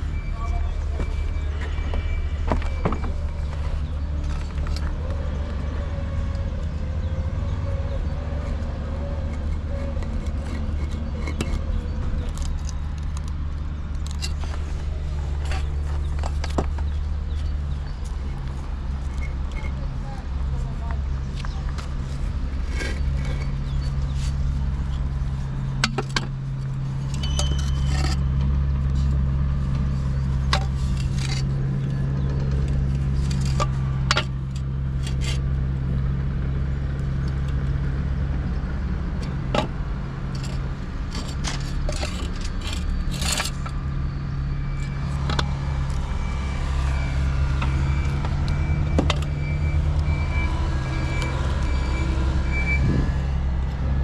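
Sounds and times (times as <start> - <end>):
low engine hum: 0.0 - 54.0.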